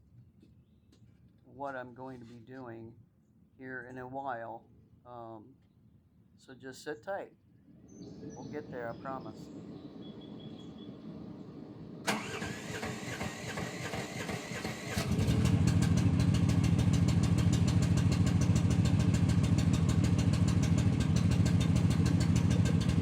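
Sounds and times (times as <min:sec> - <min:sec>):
excavator engine idling: 0:07.9 - 0:23.0
engine starter cranking: 0:12.0 - 0:15.6.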